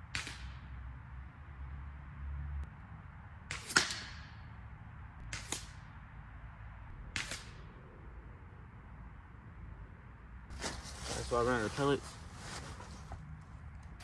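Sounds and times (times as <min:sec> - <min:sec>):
air rifle shots: 0:05.2 - 0:05.9, 0:07.1 - 0:07.8.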